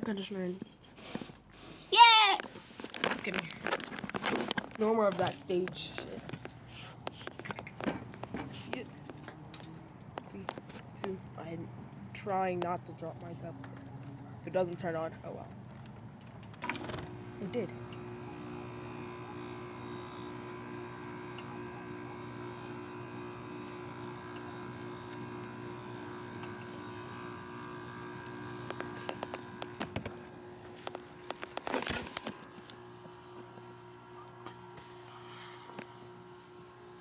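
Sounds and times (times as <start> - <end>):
air conditioner humming: 16.4 - 32.2.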